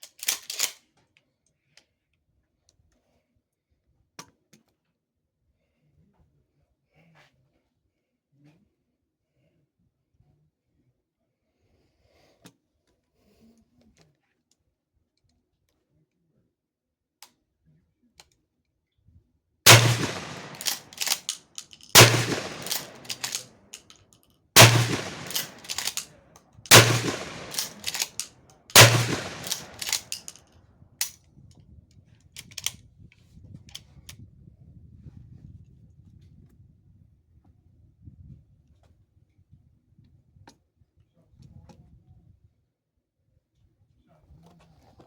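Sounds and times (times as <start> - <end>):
shotgun shots with echo: 19.7 - 23.4, 24.6 - 26.0, 26.7 - 30.3
clatter after shots: 19.7 - 23.9, 24.6 - 26.1, 26.7 - 30.4.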